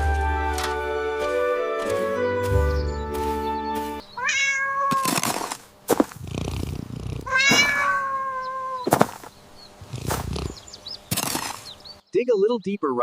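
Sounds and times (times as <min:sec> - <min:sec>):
cat meowing: 0:04.1 - 0:05.3, 0:07.2 - 0:09.0.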